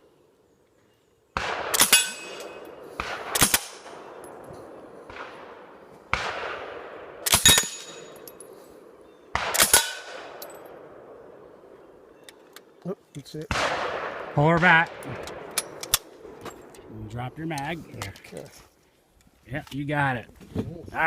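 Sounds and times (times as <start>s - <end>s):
suppressed gun firing bursts: 1.4s - 11.5s, 13.5s - 16.7s
steel targets clanging: 1.8s - 2.7s, 7.3s - 8.5s.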